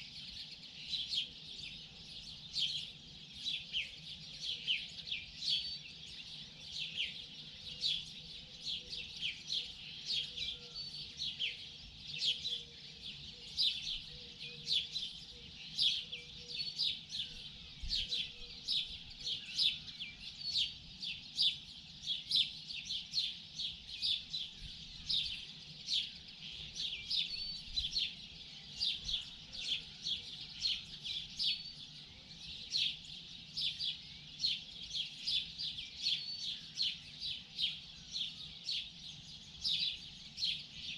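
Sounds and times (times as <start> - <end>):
songbirds chirping and twittering: 0.0 - 40.9.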